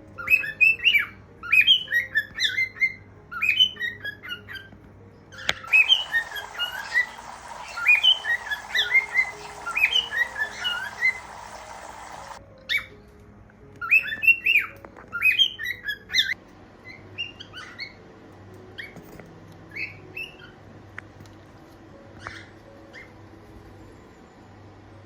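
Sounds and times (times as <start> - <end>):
cockatiels chirping and squawking: 0.3 - 4.7, 5.4 - 12.9, 13.8 - 18.0, 22.2 - 23.2
steady hiss: 5.7 - 12.4.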